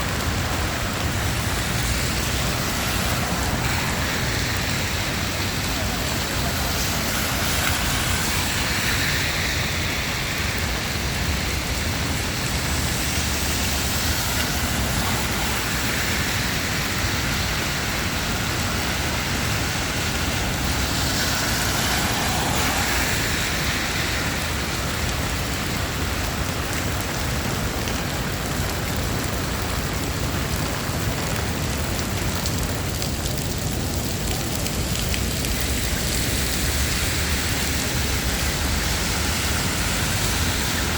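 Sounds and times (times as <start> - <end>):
rain falling on street: 0.0 - 40.9
traffic hiss on wet roads: 0.0 - 40.9.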